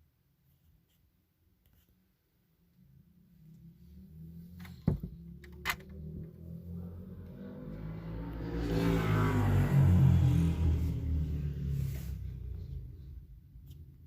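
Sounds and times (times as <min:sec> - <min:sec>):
car engine rumble approaching: 0:02.8 - 0:14.0.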